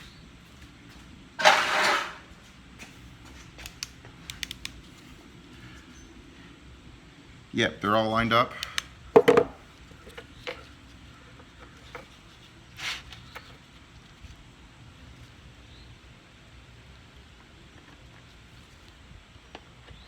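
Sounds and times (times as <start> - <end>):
metal parts clattering: 1.4 - 2.2
brief scrape: 1.4 - 2.3.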